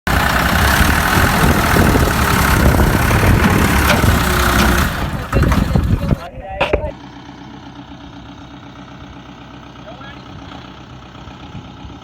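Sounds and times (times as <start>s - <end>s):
tractor diesel engine running: 0.0s - 12.0s.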